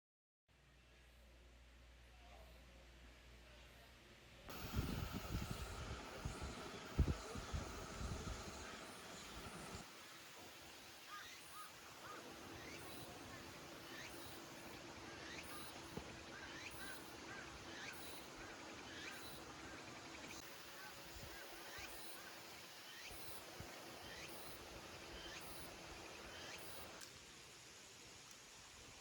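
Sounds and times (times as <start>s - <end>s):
high pulsing chirring: 4.5s - 27.0s.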